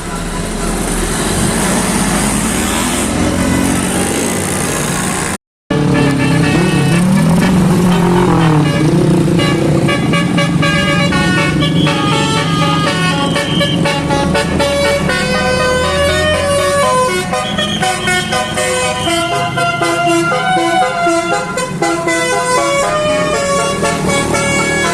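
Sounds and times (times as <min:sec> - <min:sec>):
bus air horn playing a melody: 0:05.7 - 0:24.9.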